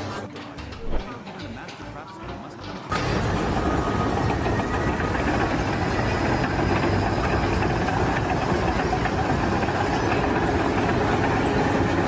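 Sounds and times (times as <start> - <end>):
engine running steadily: 2.9 - 12.0.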